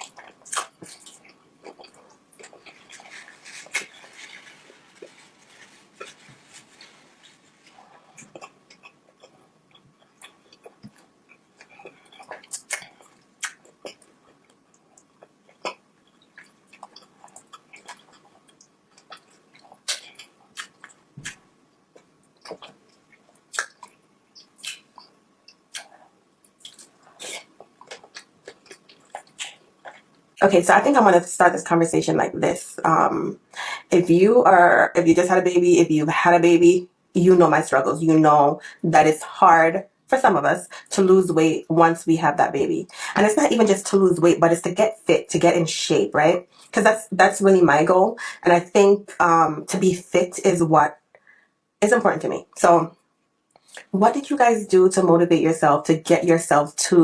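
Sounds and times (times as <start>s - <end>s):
wet chewing sounds: 0.0s - 30.4s
mouth smacks and clicks: 8.2s - 21.4s, 22.0s - 30.2s.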